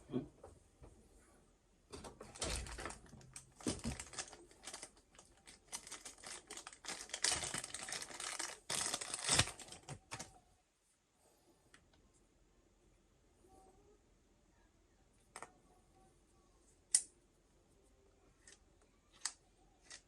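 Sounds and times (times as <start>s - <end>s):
small hard parts clicking and rattling: 1.9s - 10.3s.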